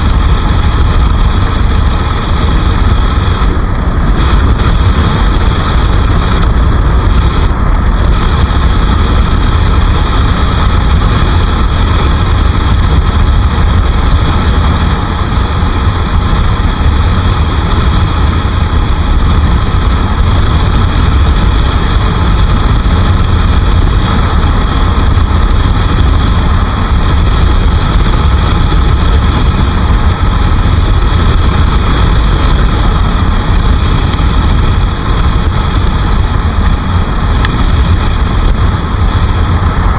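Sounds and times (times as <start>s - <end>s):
motorcycle engine running: 0.0s - 39.9s
wind rumble on microphone: 0.0s - 39.9s.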